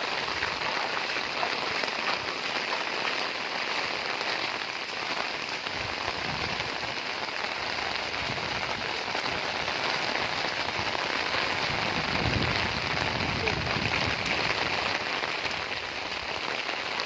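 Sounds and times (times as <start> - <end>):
heavy rain pouring: 0.0 - 17.0.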